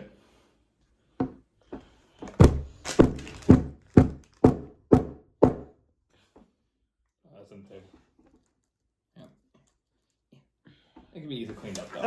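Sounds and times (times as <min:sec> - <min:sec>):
hammer thunks on tabletop: 0:02.3 - 0:05.7.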